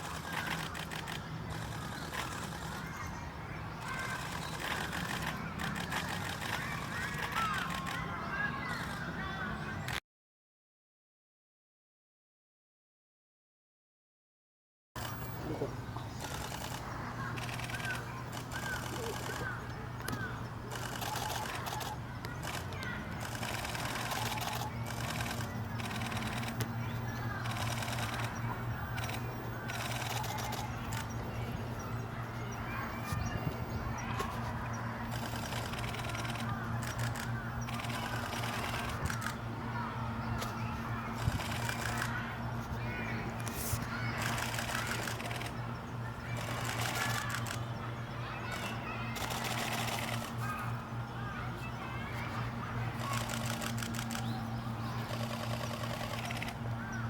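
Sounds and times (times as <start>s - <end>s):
outdoor background noise: 0.0s - 10.0s, 15.0s - 57.0s
steady low hum: 15.0s - 57.0s.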